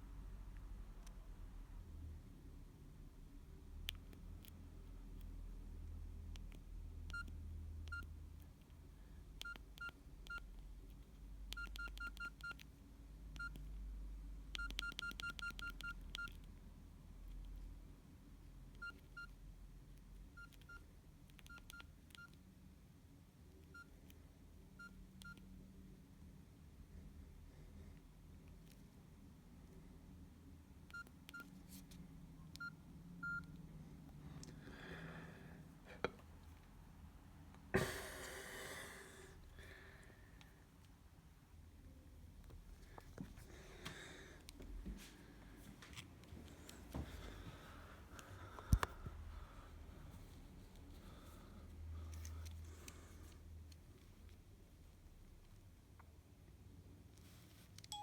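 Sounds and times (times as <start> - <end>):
phone keypad beeps with clicks: 6.4 - 8.2, 9.3 - 13.8, 14.5 - 16.5, 18.7 - 19.4, 20.2 - 22.4, 23.6 - 24.1, 24.8 - 25.6, 30.9 - 31.6, 32.5 - 33.6.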